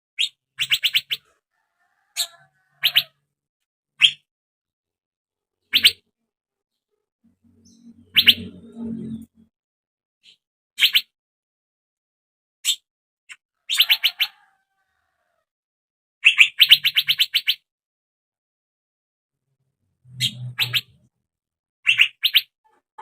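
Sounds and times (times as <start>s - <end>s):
bird sharp chirps: 0.2s - 1.3s, 4.0s - 4.3s, 5.6s - 6.1s, 7.4s - 9.0s, 16.2s - 17.7s, 20.1s - 21.1s, 21.8s - 22.6s.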